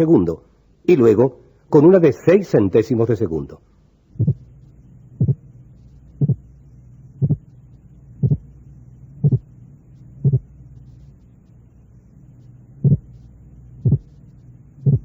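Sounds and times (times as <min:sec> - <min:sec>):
steady low hum: 0:00.0 - 0:15.0
split heartbeat sounds: 0:04.2 - 0:04.5, 0:05.2 - 0:05.5, 0:06.2 - 0:06.5, 0:07.2 - 0:07.5, 0:08.2 - 0:08.6, 0:09.2 - 0:09.5, 0:10.2 - 0:10.6, 0:12.8 - 0:14.2, 0:14.8 - 0:15.0.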